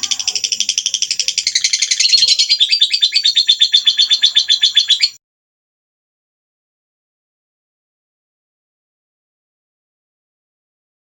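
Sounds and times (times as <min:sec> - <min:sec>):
songbird harsh rattling call: 0:00.0 - 0:05.2.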